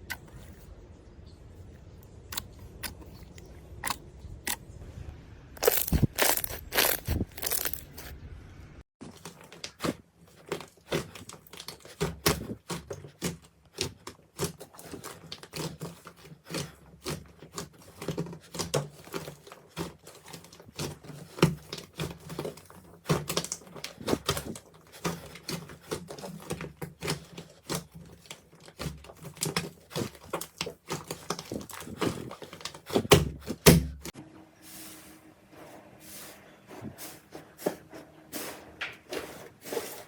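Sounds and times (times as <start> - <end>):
slime squeezed with sticky pops: 5.6 - 8.1.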